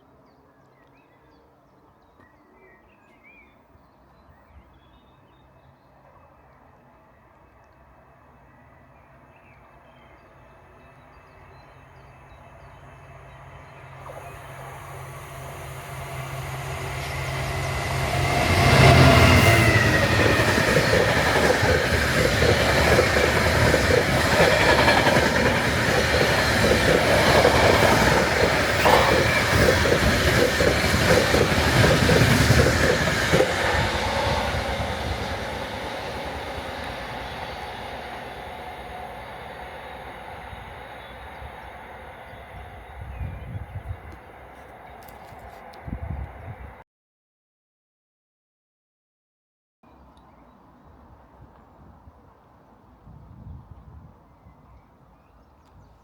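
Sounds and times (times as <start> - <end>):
diesel locomotive passing: 10.3 - 46.8
wagons rumbling: 16.1 - 46.8.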